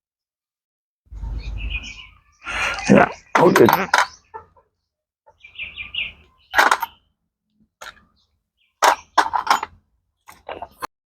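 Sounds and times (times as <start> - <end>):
metal tools clinking: 3.4 - 4.2, 6.6 - 6.9, 8.8 - 9.8.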